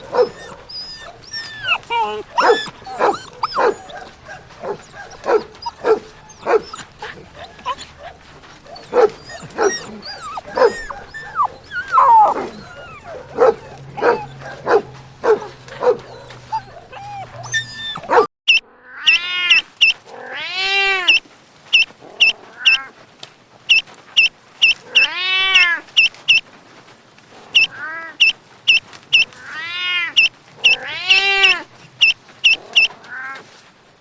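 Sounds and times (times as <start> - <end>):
dog barking in sharp yips: 0.0 - 18.3
dog whining: 0.0 - 18.3.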